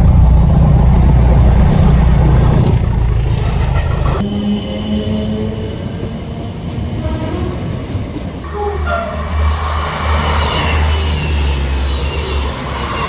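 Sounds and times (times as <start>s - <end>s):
low engine rumble: 0.0s - 4.4s
train horn: 4.2s - 7.8s, 8.4s - 13.0s.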